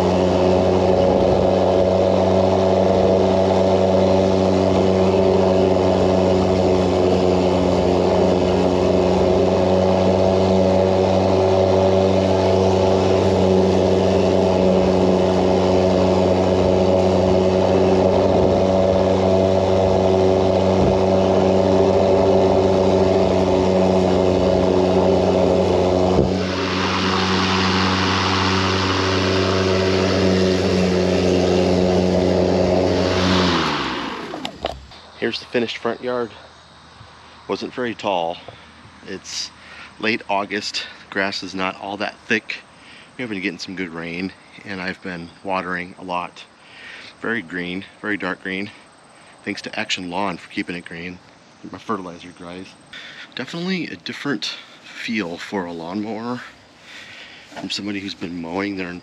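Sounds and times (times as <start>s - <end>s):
electric lawn mower humming: 0.0s - 35.8s, 50.0s - 59.0s
rushing hiss: 26.1s - 31.7s, 56.3s - 58.1s.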